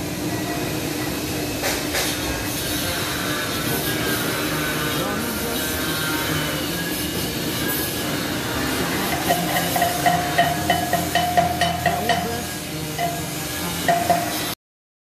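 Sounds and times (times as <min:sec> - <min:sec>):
welding arc crackling hiss: 0:00.0 - 0:14.6
rhythmic music beat: 0:09.1 - 0:14.5.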